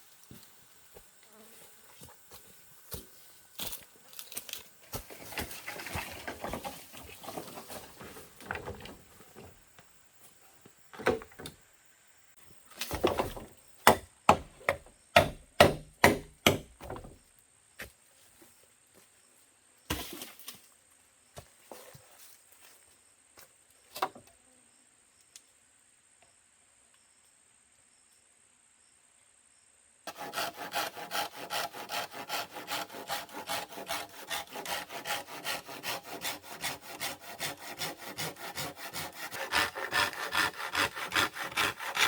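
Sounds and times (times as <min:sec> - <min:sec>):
wood being chopped: 0:12.8 - 0:17.2.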